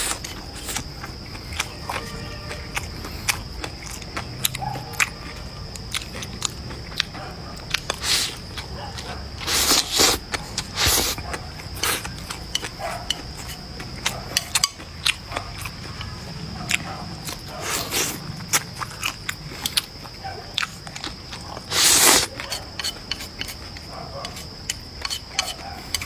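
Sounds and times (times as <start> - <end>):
chewing and biting: 0.0 - 26.0.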